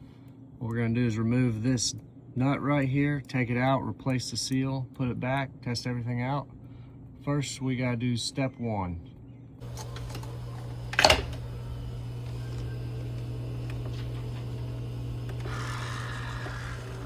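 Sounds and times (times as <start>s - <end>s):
low machine hum: 9.6s - 17.0s.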